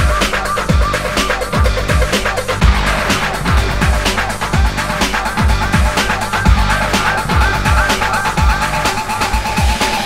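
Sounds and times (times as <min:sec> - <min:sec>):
kick drum: 0:01.6 - 0:08.7
repeating synth line: 0:02.5 - 0:09.0.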